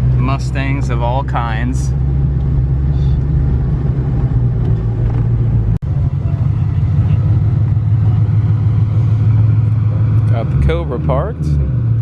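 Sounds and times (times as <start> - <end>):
car engine drone: 0.0 - 12.0.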